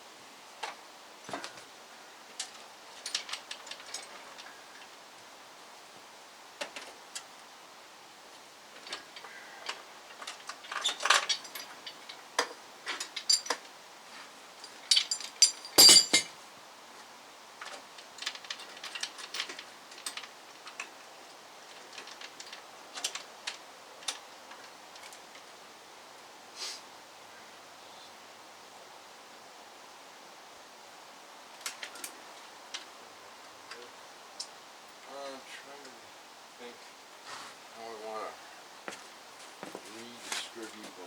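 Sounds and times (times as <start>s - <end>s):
metal tools clinking: 12.9s - 13.6s, 14.6s - 16.4s.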